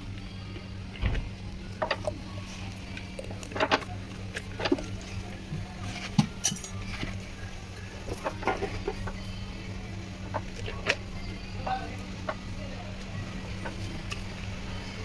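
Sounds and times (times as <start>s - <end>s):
steady low hum: 0.0s - 15.0s
metal tools clicking and knocking: 6.2s - 6.8s.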